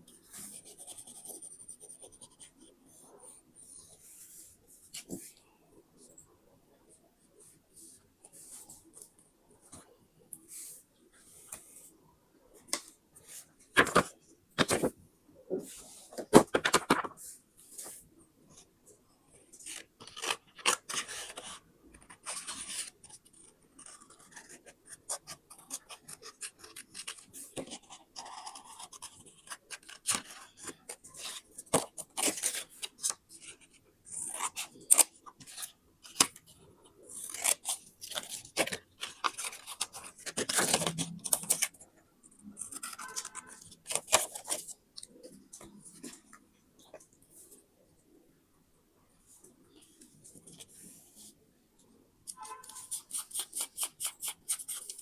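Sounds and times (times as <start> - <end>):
paper rustling: 15.6 - 18.0, 37.1 - 41.8, 42.5 - 46.3
scissors snipping paper: 37.2 - 41.8, 52.3 - 55.0.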